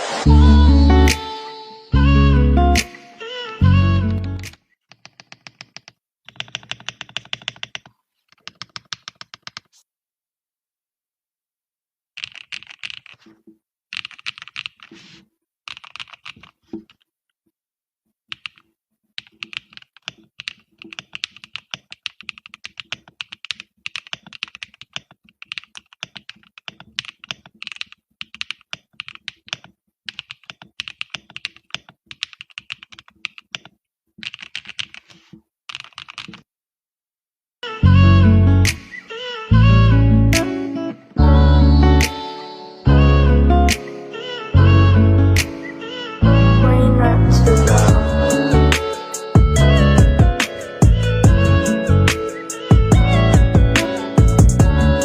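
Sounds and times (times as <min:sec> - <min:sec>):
mechanical keyboard typing: 0:04.4 - 0:09.7, 0:12.2 - 0:13.2, 0:13.9 - 0:14.9, 0:15.7 - 0:17.0, 0:18.3 - 0:36.5, 0:47.6 - 0:54.8.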